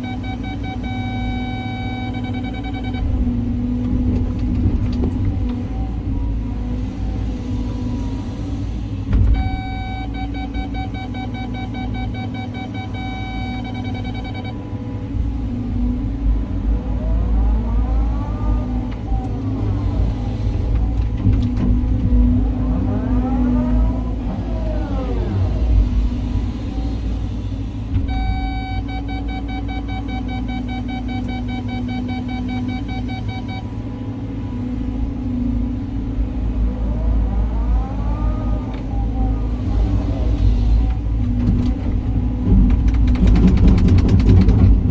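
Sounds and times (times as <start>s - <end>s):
high-pitched electronic beeps: 0.0s - 3.2s, 9.4s - 14.6s, 28.1s - 33.7s
excavator engine rumble: 0.0s - 44.9s.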